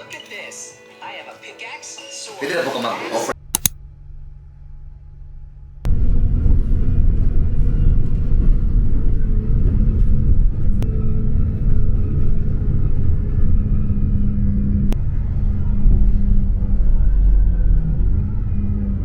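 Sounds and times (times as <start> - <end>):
vehicle engine rumble: 5.9 - 19.0.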